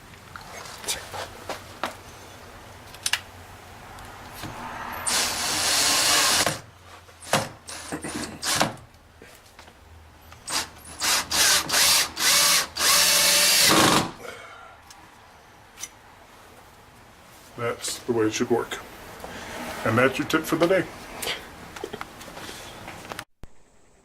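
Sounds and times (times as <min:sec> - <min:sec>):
power drill driving a screw: 0:05.1 - 0:06.6, 0:07.3 - 0:08.7, 0:10.5 - 0:14.1.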